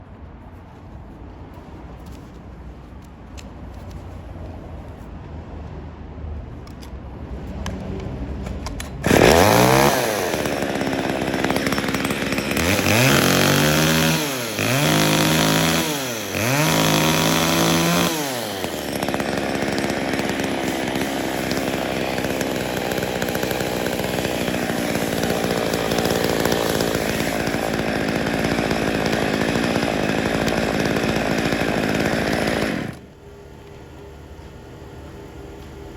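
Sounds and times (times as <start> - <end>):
chainsaw engine revving: 7.4 - 33.0.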